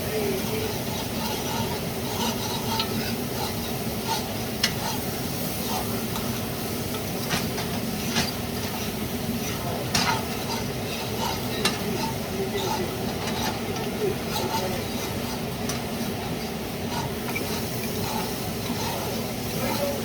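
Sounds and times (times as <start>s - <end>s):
food sizzling in a frying pan: 0.0s - 20.0s
utensil scraping a pan: 0.1s - 20.0s.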